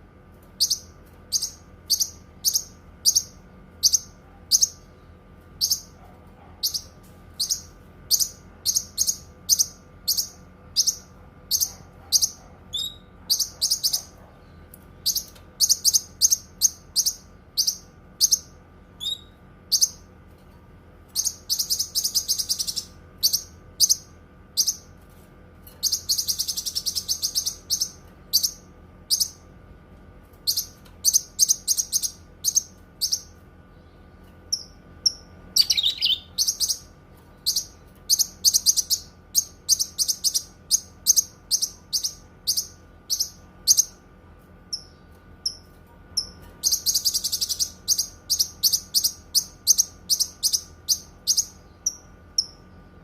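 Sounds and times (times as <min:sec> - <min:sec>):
faint steady hum: 0:00.0 - 0:53.0
bird chattering: 0:00.6 - 0:04.8, 0:06.6 - 0:20.0, 0:34.5 - 0:44.0
bird chirping: 0:00.6 - 0:05.0, 0:05.6 - 0:06.0, 0:06.6 - 0:20.1, 0:21.1 - 0:24.9, 0:25.8 - 0:29.4, 0:30.4 - 0:44.0, 0:44.7 - 0:52.7.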